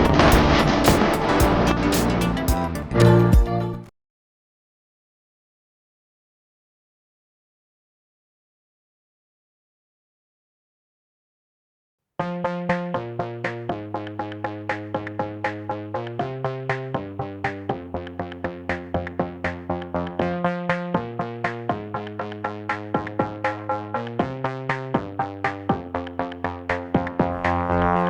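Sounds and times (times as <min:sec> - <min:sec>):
background music with steady beat: 0:00.0 - 0:03.9, 0:12.2 - 0:28.0.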